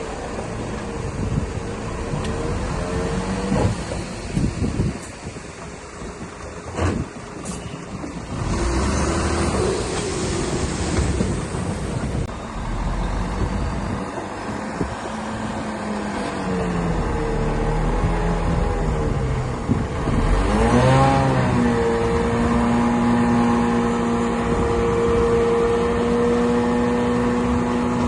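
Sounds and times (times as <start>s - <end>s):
bulldozer diesel engine running: 0.0s - 20.6s.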